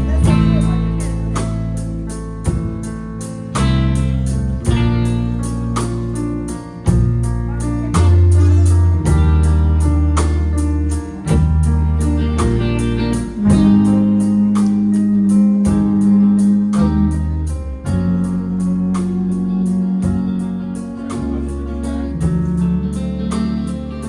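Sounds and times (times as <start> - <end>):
bass line: 0.0 - 24.0
guitar chords: 0.0 - 24.0
keyboard chords: 0.0 - 24.0.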